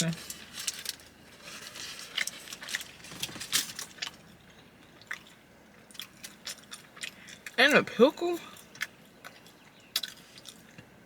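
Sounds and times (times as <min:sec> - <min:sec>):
wet squishes of eating: 0:01.6 - 0:07.6, 0:08.4 - 0:10.9.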